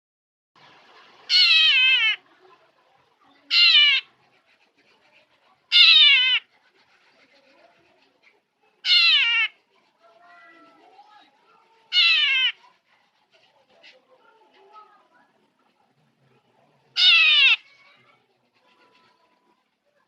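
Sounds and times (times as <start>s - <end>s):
bird mimicking cat meows: 1.3s - 2.2s, 3.5s - 4.1s, 5.7s - 6.4s, 8.8s - 9.6s, 11.9s - 12.6s, 17.0s - 17.9s.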